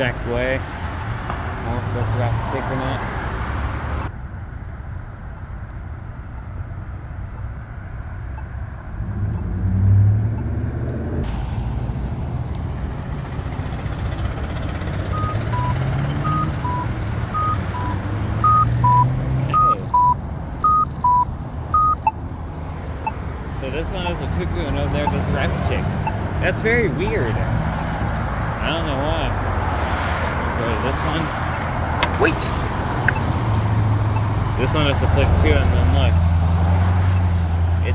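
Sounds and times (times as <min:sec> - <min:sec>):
traffic passing: 0:00.0 - 0:37.9
electronic cuckoo walk tone: 0:15.1 - 0:22.2.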